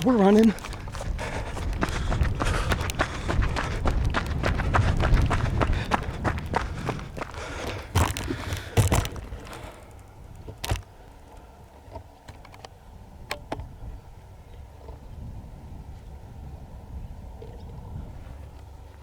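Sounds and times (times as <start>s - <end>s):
hurried footsteps: 0.0s - 10.0s
handling thumps: 5.9s - 10.8s.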